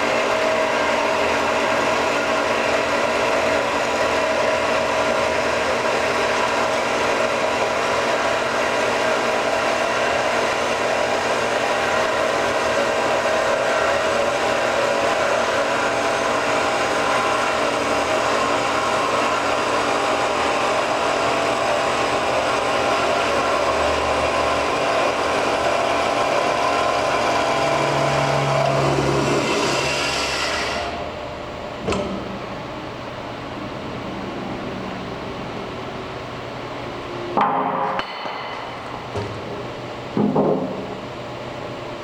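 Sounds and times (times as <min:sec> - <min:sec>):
band saw cutting metal: 0:00.0 - 0:31.1.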